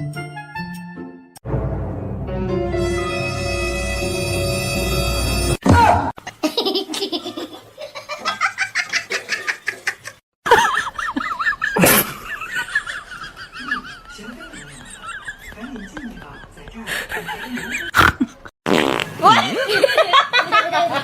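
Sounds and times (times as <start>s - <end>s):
music: 0.0s - 5.6s.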